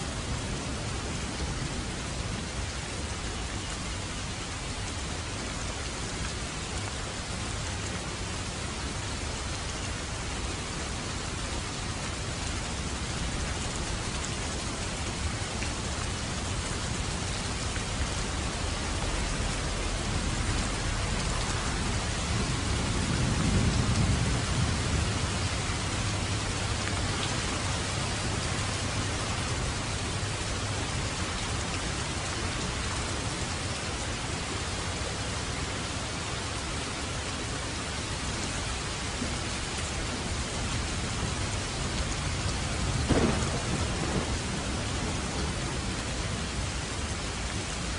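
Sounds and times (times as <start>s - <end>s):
steady rain falling: 0.0s - 47.9s
low rumble of thunder: 9.2s - 32.8s, 40.8s - 47.8s.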